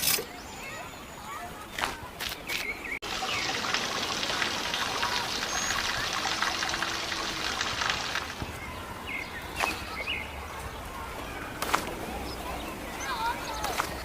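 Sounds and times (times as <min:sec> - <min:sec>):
water pouring in a stream: 0:03.0 - 0:09.7.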